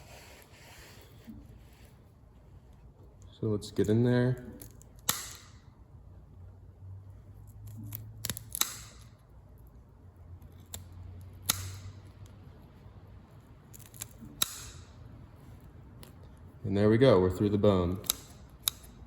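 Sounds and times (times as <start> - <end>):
scissors snipping through bone: 4.6 - 5.5, 7.5 - 9.1, 10.4 - 12.0, 13.7 - 14.9, 17.9 - 19.0.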